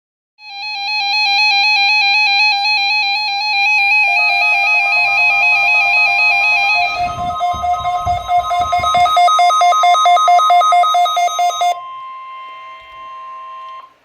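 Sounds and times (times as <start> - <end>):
warbling electronic alarm tone: 0.4 - 14.0
higher electronic tone: 3.8 - 14.0.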